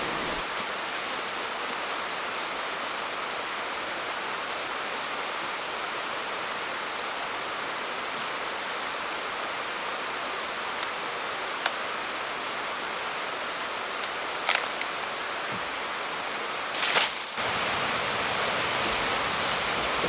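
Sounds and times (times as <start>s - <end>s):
water rushing: 0.0s - 20.0s.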